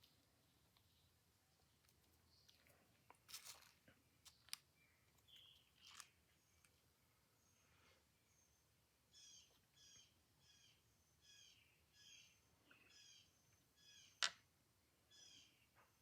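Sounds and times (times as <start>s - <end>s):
bird chirping faintly: 4.2s - 14.4s.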